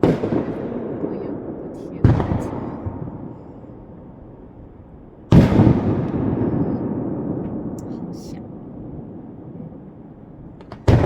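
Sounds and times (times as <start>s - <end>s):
firework shells bursting: 0.0s - 6.5s, 10.5s - 11.0s
rolling rumble of explosions: 0.0s - 11.0s.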